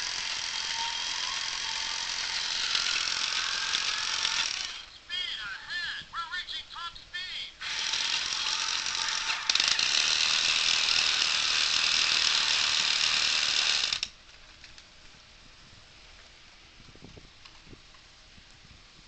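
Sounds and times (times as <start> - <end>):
toy electric motor whirring: 0.0 - 4.9, 7.6 - 14.2.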